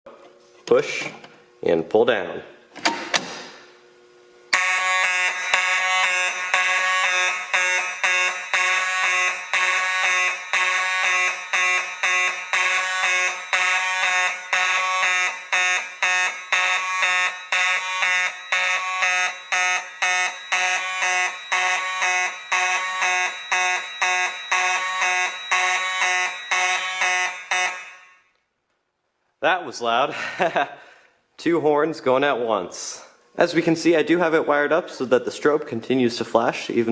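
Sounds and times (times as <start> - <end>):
fire alarm horns pulsing: 4.5 - 28.4.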